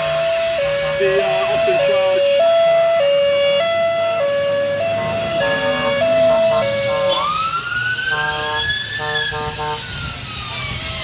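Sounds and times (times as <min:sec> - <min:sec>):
higher two-tone siren: 0:00.0 - 0:11.0
two-tone siren: 0:00.0 - 0:11.0.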